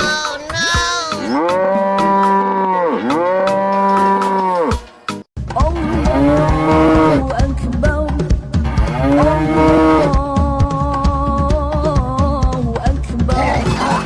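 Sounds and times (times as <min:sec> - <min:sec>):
cow mooing: 0:01.1 - 0:04.8, 0:05.9 - 0:07.2, 0:08.8 - 0:10.2.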